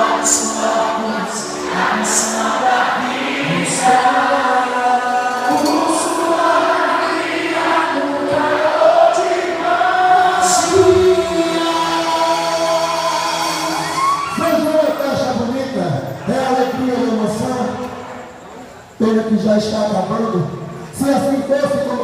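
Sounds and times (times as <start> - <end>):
choir singing long gliding notes: 0.0 - 14.7.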